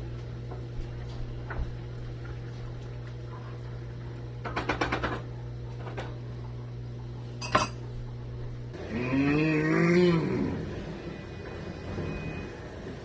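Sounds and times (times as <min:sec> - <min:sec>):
steady hum: 0:00.0 - 0:13.0.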